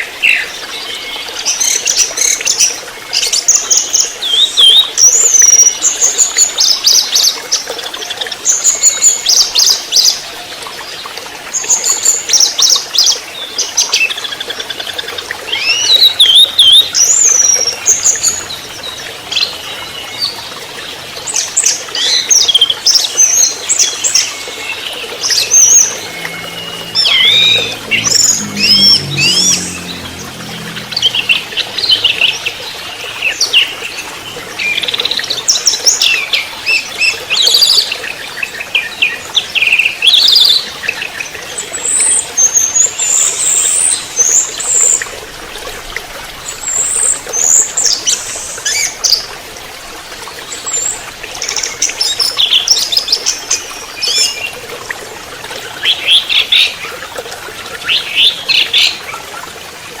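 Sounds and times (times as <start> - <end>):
thrush singing chattering song: 24.0 - 35.1.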